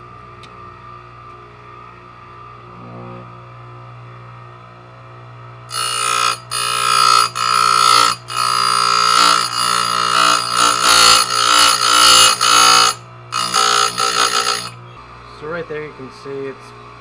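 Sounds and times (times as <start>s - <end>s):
shrill grinding wheel on metal: 5.7s - 14.8s
motor humming: 5.7s - 15.0s.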